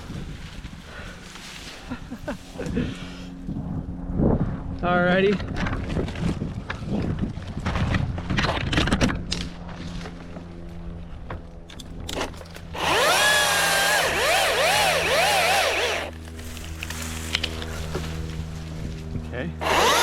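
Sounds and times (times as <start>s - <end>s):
chainsaw cutting wood: 12.2s - 16.2s, 19.6s - 20.0s.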